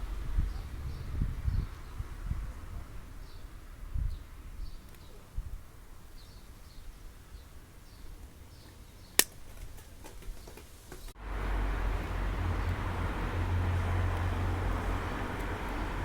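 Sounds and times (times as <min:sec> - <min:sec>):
low outdoor rumble: 0:00.0 - 0:06.0, 0:11.1 - 0:16.0
sharp click: 0:09.2 - 0:09.4.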